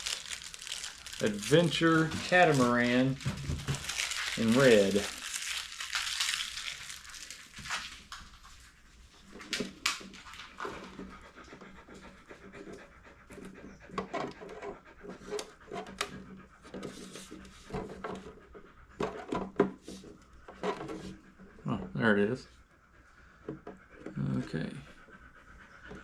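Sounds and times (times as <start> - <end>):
dog panting: 6.9 - 26.0.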